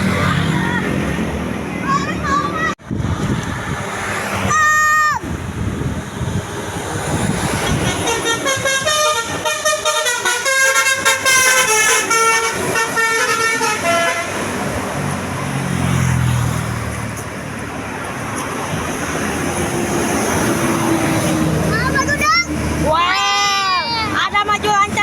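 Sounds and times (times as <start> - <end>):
musical bus horn tune: 7.8 - 14.6.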